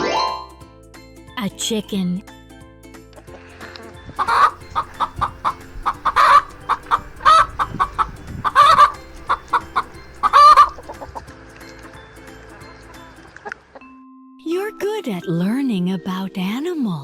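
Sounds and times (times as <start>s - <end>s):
chicken clucking: 4.2s - 11.2s.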